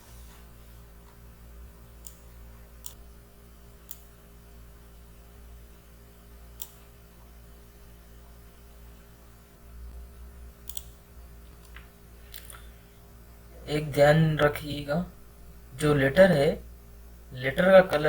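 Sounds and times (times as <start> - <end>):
steady low hum: 0.0 - 18.0
keyboard or mouse clicks: 10.7 - 11.0.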